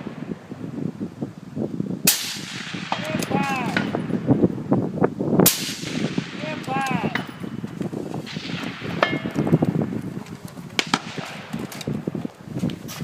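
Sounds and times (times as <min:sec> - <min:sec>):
voices talking quietly: 0:06.4 - 0:07.3.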